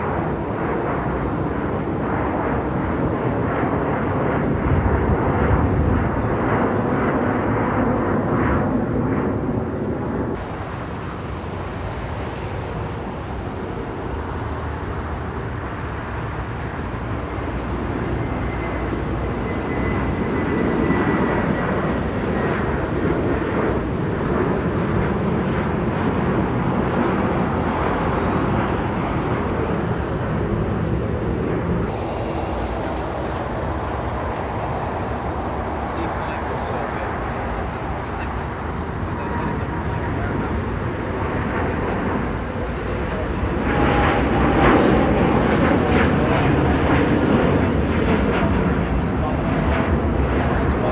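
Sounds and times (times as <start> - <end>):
jet airliner engine rush: 0.0 - 50.9
faint high whine: 28.8 - 42.2.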